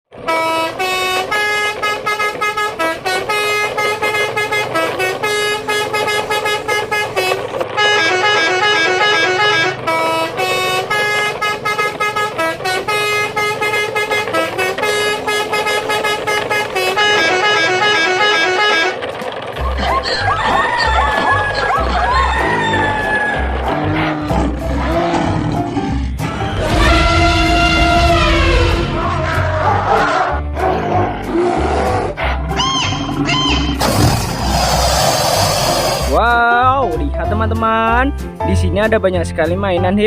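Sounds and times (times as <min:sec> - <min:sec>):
musical air horn melody: 0:00.1 - 0:19.7, 0:26.2 - 0:30.4
low thumps: 0:25.2 - 0:29.4.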